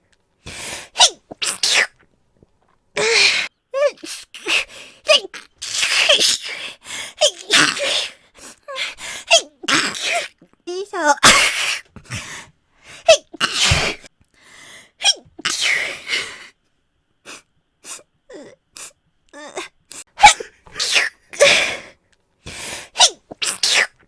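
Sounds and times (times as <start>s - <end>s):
woman sneezing: 1.0s - 1.9s, 7.2s - 8.2s, 11.1s - 11.9s, 13.0s - 14.1s, 15.0s - 16.2s, 20.0s - 21.9s, 23.0s - 24.0s
faint breaths: 14.3s - 15.0s.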